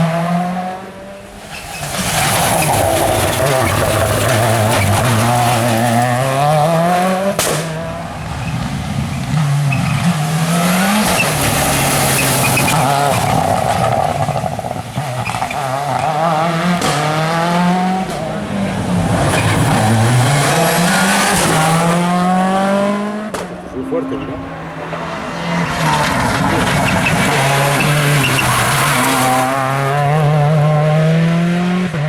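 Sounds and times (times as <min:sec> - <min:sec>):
rally car engine accelerating: 0:00.0 - 0:32.0
tyre squeal: 0:01.4 - 0:16.5, 0:19.1 - 0:22.5, 0:24.1 - 0:30.4
sharp crack: 0:06.3 - 0:08.0, 0:16.8 - 0:17.3, 0:18.0 - 0:18.6, 0:23.2 - 0:23.8.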